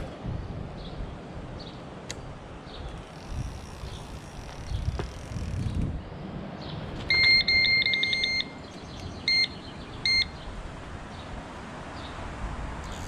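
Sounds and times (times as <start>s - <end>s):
electronic bite alarm beeping: 7.1s - 8.6s, 9.3s - 10.4s.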